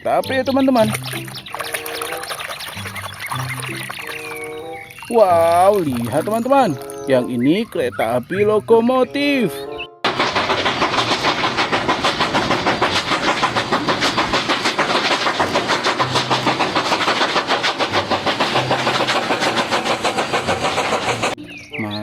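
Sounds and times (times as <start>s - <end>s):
train clattering: 0.0s - 7.6s, 10.1s - 21.4s.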